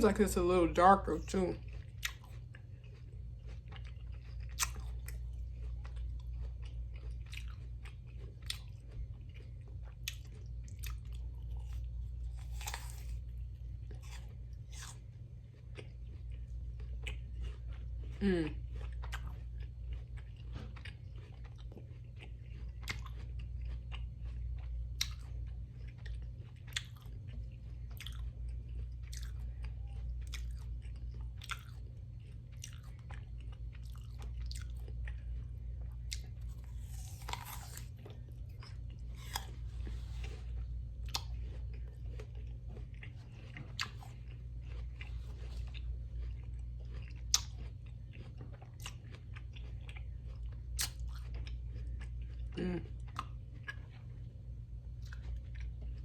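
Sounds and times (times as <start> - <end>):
person chewing and crunching food: 0.0 - 56.0
steady low hum: 0.0 - 56.0.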